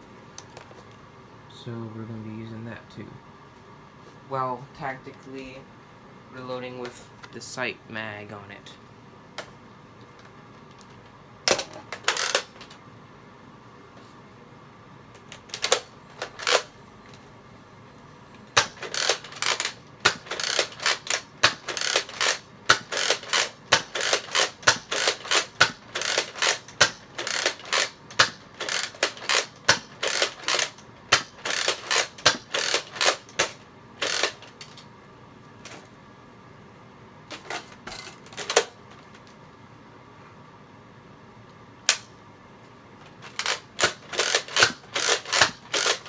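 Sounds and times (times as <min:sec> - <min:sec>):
plastic clacks of dart blaster: 0:18.6 - 0:34.8.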